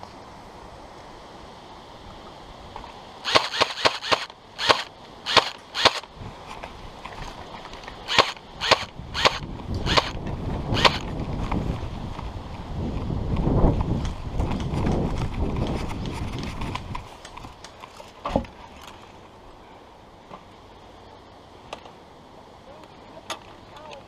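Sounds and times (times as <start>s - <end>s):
airsoft gun shots: 3.3s - 6.0s, 8.1s - 10.2s.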